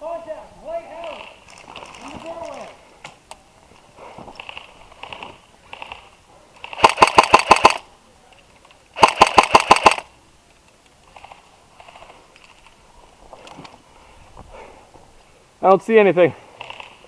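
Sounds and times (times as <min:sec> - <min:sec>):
airsoft rifle bursts: 0:06.6 - 0:07.9, 0:09.0 - 0:10.1.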